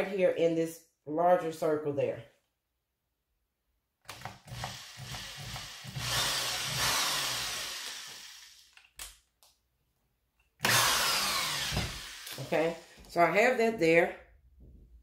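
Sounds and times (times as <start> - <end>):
power drill running into wall: 4.1 - 8.8, 10.6 - 13.1.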